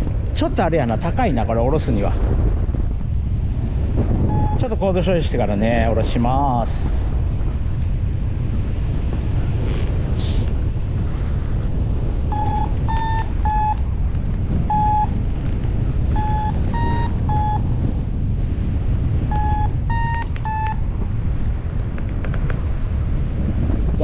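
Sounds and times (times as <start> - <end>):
wind on microphone: 0.0 - 24.0
variometer beeping: 4.2 - 4.7, 12.3 - 14.0, 14.6 - 17.9, 19.2 - 20.9.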